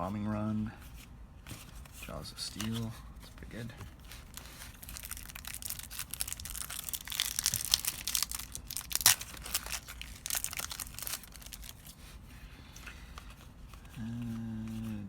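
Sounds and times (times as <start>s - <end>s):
wrapper crinkling and crackling: 4.2s - 12.0s.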